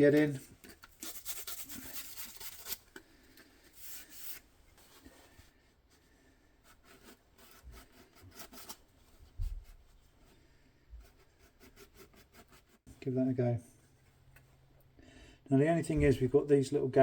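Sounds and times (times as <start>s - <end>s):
scratchy rubs and scrapes on plastic: 0.1s - 3.0s, 3.6s - 12.9s.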